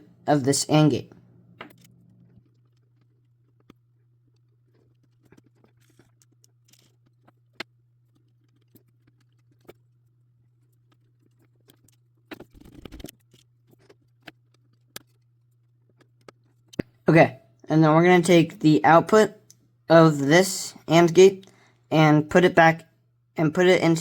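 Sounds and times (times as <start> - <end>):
wires clicking into breadboard: 4.4 - 9.8, 10.9 - 15.3.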